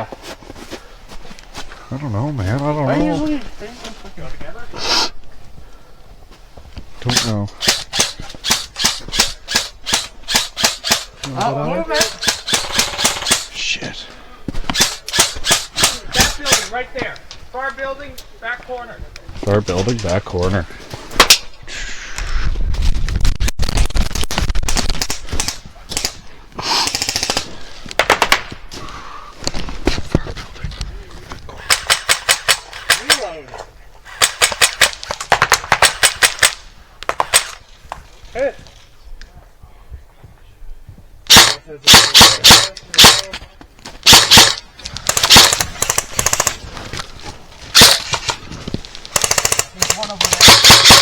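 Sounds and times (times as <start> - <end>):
airsoft gun firing bursts: 7.1 - 11.1, 11.9 - 13.5, 14.7 - 16.7, 24.7 - 26.2, 26.8 - 28.5, 31.6 - 33.2, 34.1 - 36.6, 41.3 - 43.3, 44.0 - 46.6, 47.7 - 48.4, 49.1 - 51.0.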